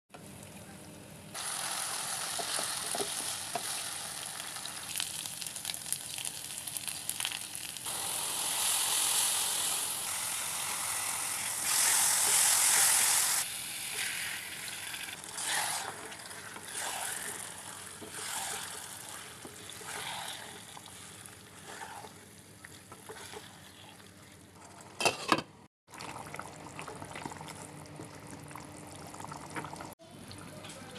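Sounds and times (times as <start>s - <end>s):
meat sizzling in a pan: 1.4s - 22.0s.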